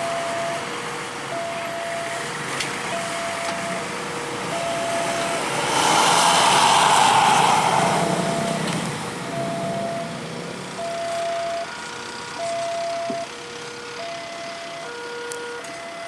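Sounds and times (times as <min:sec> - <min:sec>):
bus passing close by: 0:00.0 - 0:12.6.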